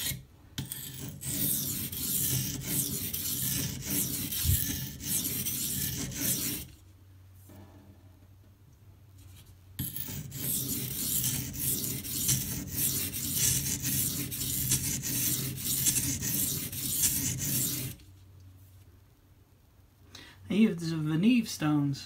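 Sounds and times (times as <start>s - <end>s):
knife scraping on whetstone: 0.0s - 6.7s, 9.8s - 18.0s.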